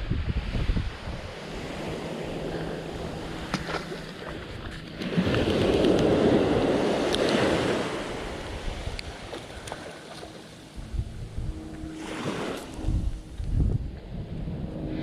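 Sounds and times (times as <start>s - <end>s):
wind buffeting microphone: 0.0s - 9.7s, 10.8s - 15.0s
ocean waves breaking: 0.4s - 15.0s.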